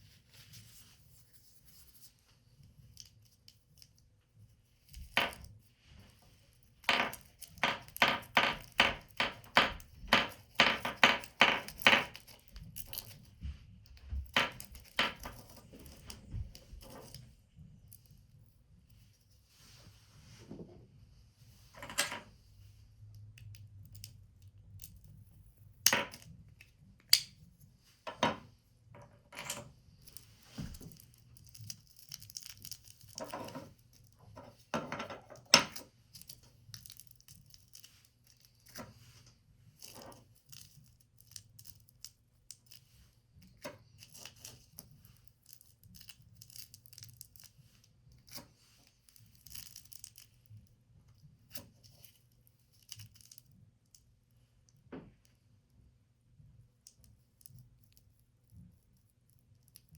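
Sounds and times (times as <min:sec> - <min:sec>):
sharp snaps and taps: 0:25.8 - 0:27.4.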